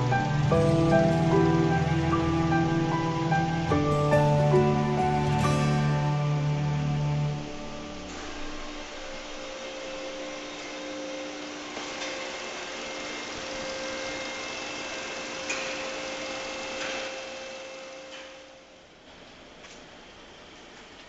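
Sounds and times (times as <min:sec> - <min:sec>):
steady hums: 0:00.0 - 0:16.6
machine running noise: 0:00.0 - 0:21.0.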